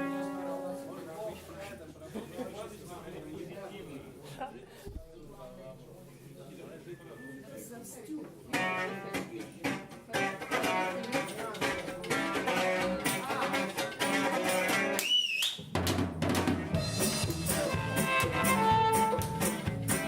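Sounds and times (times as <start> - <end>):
live band music: 0.0 - 0.9, 8.5 - 15.0, 15.7 - 20.0.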